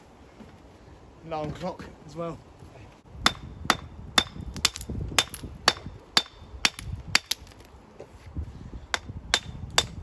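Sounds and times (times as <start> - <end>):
hammer blows on stone: 3.2 - 7.4.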